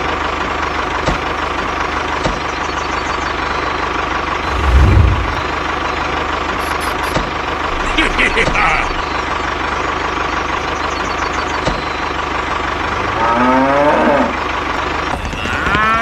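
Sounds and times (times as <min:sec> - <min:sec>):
low thump: 0:04.5 - 0:05.5.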